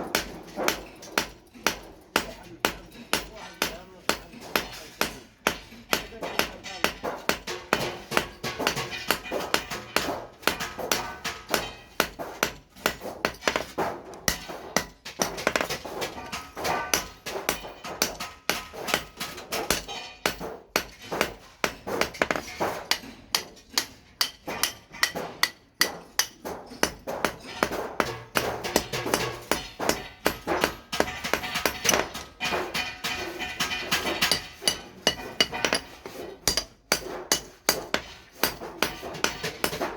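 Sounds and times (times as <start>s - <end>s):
hammer striking hot steel: 0.0s - 39.9s.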